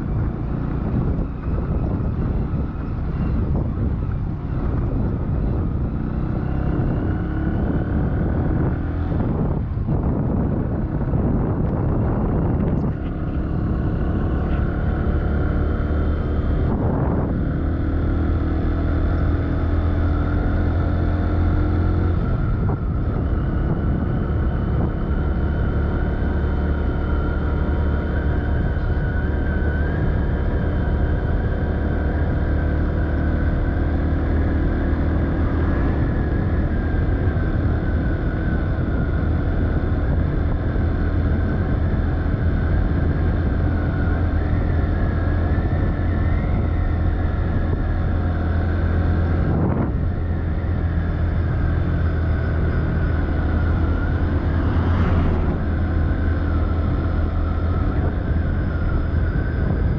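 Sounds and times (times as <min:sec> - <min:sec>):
vehicle engine humming: 0:00.0 - 0:59.9
faint wavering whine: 0:42.6 - 0:59.9.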